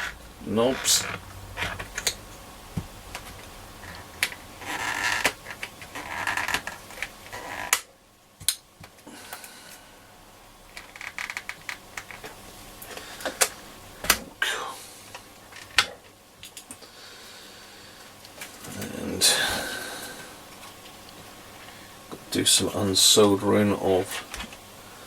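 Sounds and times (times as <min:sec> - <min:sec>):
plastic scraping rubs: 0:00.0 - 0:07.8.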